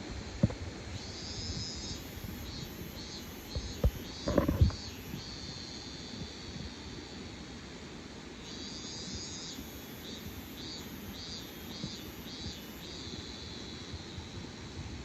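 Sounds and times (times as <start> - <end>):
insect chorus: 0.0 - 15.0
insect pulsed calls: 0.9 - 7.2, 8.3 - 14.8.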